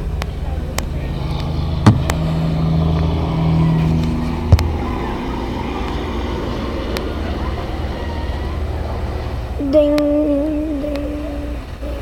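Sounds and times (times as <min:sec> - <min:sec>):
sustained hum: 0:00.0 - 0:12.0
train rumbling: 0:00.0 - 0:12.0
sharp knocks: 0:01.8 - 0:03.2.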